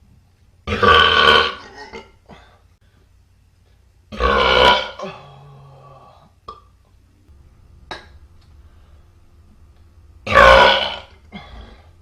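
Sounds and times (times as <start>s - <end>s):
loud drawn-out burps: 0.7s - 2.1s, 4.1s - 5.7s, 10.2s - 11.8s.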